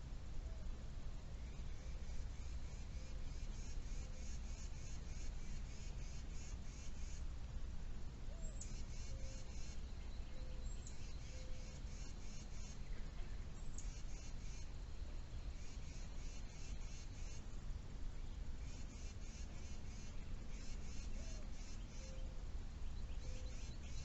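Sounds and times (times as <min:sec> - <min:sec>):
birds singing trilled phrases: 0:08.3 - 0:17.6, 0:18.2 - 0:24.0.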